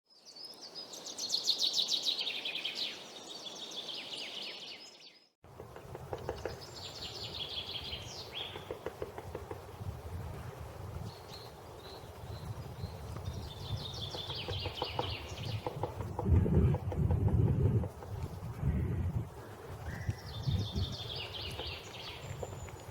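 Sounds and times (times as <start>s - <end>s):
woodpecker tapping on wood: 5.5s - 7.2s, 8.2s - 9.9s, 13.1s - 18.5s, 21.1s - 22.9s.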